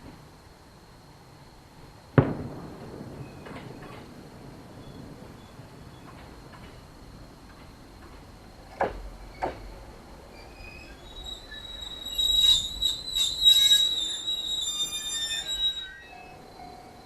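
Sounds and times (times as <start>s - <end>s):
sharp cracks: 2.2s - 9.9s
rail knocks: 6.0s - 10.1s
train wheels squealing: 9.2s - 17.0s.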